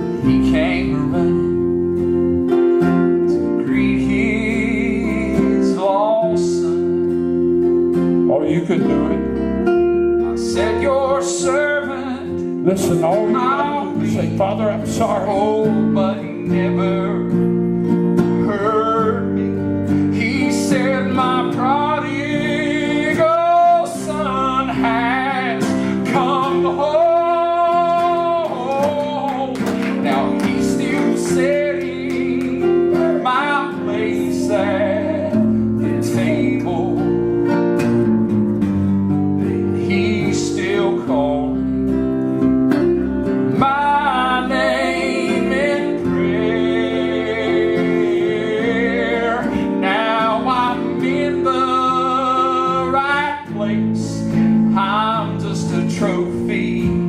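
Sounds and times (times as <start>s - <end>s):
person singing gospel song: 0.0s - 1.8s, 3.3s - 7.0s, 10.2s - 17.3s, 18.4s - 37.2s, 39.4s - 41.8s, 43.5s - 57.0s
instrumental accompaniment: 0.0s - 57.0s.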